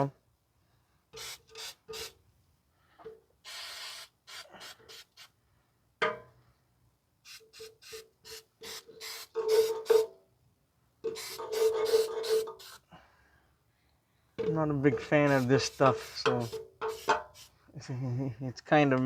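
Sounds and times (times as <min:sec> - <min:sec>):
aerosol spray can hissing: 0:01.2 - 0:02.2, 0:03.4 - 0:05.3, 0:07.2 - 0:10.0, 0:11.1 - 0:12.8, 0:15.0 - 0:17.6.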